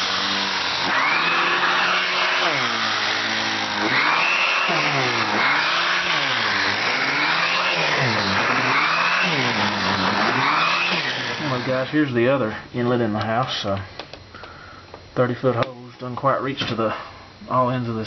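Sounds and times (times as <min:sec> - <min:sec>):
vacuum cleaner running: 0:00.0 - 0:12.6.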